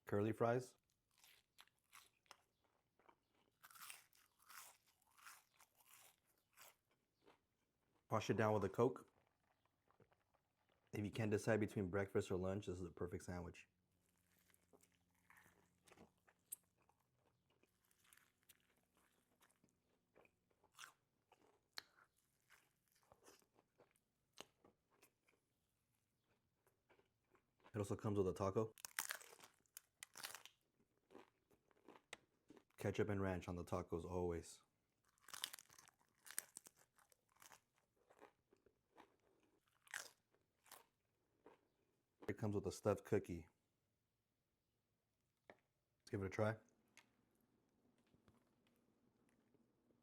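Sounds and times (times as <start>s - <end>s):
crunchy food chewing: 0.9s - 8.1s, 9.0s - 10.9s, 13.9s - 25.5s, 28.8s - 32.7s, 35.0s - 42.3s.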